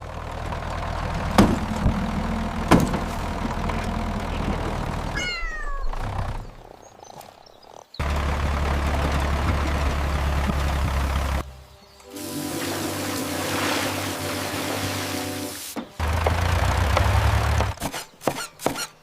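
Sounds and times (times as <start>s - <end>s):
low engine-like hum: 0.0s - 6.9s, 8.0s - 17.8s
cat meowing: 5.1s - 6.0s.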